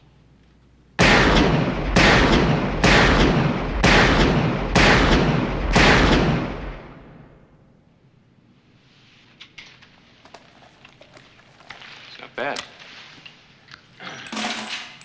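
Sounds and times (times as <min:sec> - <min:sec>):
revolver shots echoing: 0:01.0 - 0:07.6.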